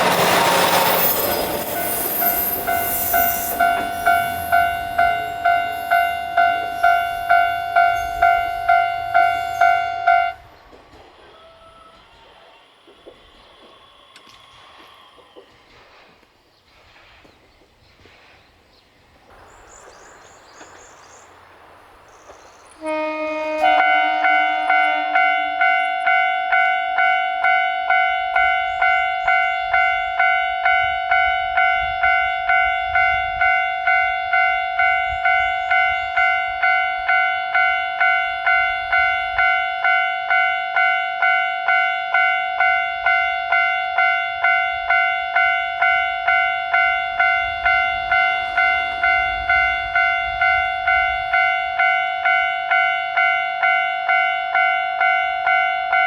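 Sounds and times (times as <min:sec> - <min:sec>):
railroad crossing alarm bell: 0:00.0 - 0:15.8, 0:19.3 - 0:56.0.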